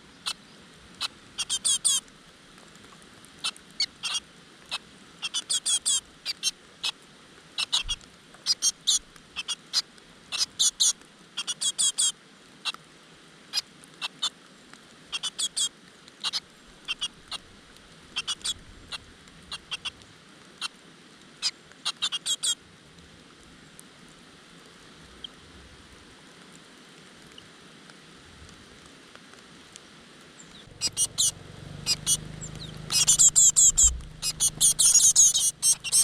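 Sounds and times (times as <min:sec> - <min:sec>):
nestlings squeaky begging calls: 0:01.0 - 0:02.0, 0:03.4 - 0:04.2, 0:05.2 - 0:06.6, 0:07.6 - 0:12.1, 0:15.1 - 0:17.5, 0:18.1 - 0:20.0, 0:21.9 - 0:22.6, 0:30.4 - 0:36.0.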